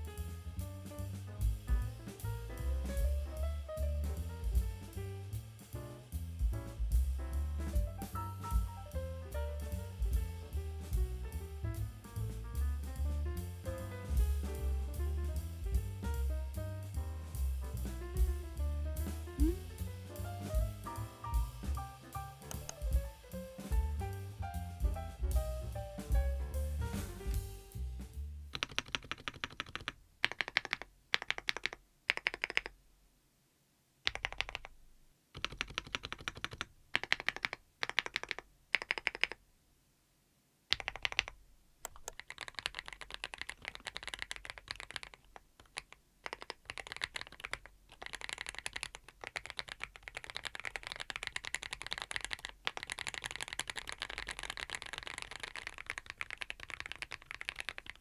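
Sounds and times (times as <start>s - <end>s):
mechanical keyboard typing: 28.6s - 32.7s, 34.1s - 34.7s, 35.4s - 39.4s, 40.7s - 58.0s.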